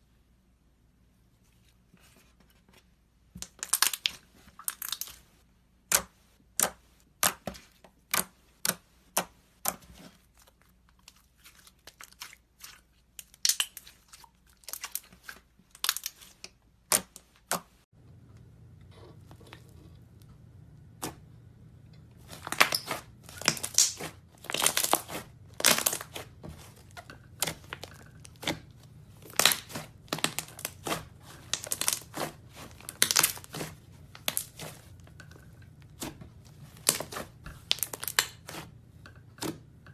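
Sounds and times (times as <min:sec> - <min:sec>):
slime popping and crackling: 0:13.2 - 0:14.0, 0:22.3 - 0:34.8, 0:36.7 - 0:38.6.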